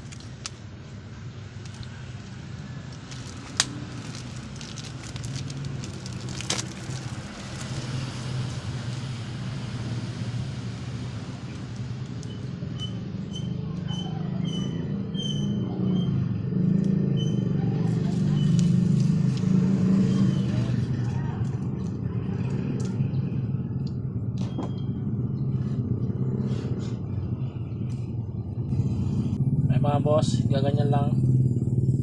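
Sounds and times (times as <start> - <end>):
low engine-like rumble: 0.0 - 32.0.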